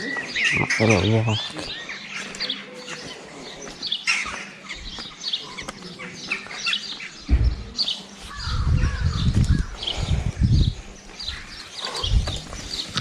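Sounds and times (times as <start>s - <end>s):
small birds chirping: 0.0s - 13.0s
loud low thump: 7.3s - 7.8s.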